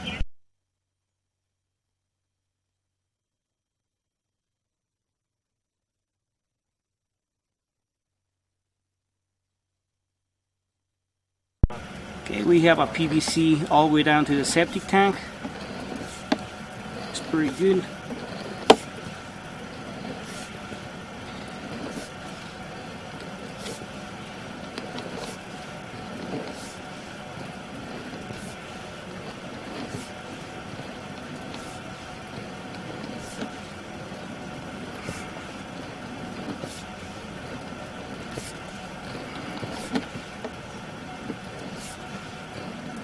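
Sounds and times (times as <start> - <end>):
mechanical hum: 11.6 - 43.0.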